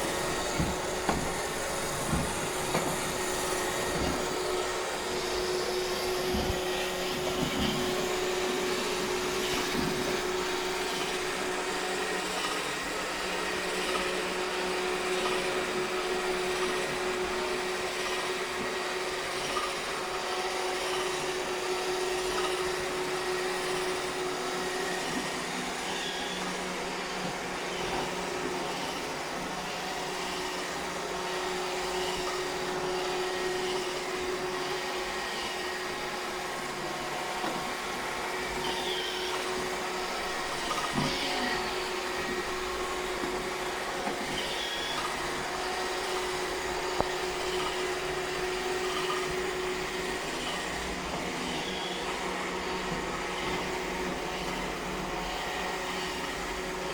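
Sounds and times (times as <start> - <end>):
robot vacuum whirring: 0.0 - 56.9.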